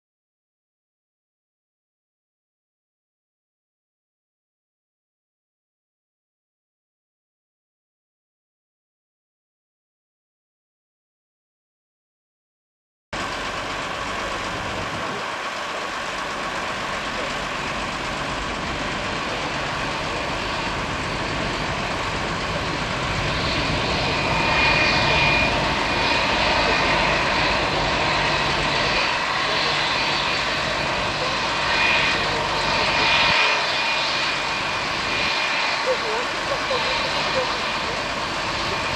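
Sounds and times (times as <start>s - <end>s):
high jet engine whine: 13.2s - 38.9s
jet engine roar: 13.2s - 38.9s.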